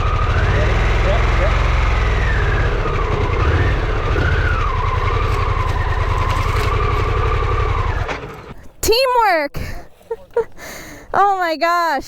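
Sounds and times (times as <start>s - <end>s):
motorcycle engine revving: 0.0s - 8.6s.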